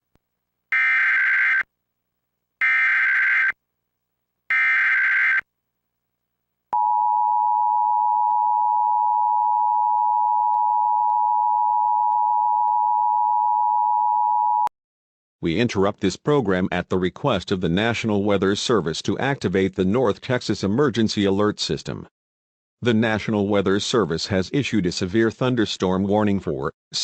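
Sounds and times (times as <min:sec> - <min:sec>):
short data bursts: 0:04.5 - 0:05.4.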